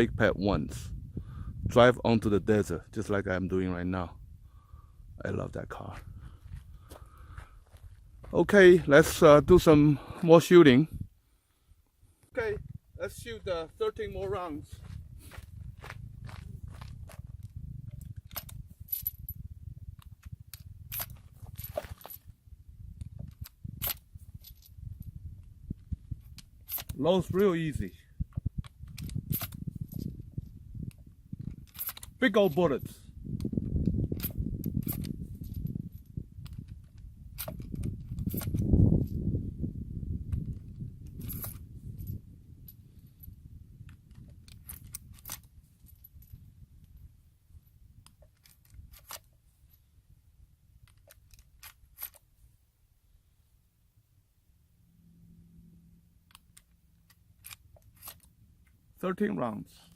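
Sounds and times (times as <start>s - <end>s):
metallic cartridge clicks: 56.2s - 58.8s.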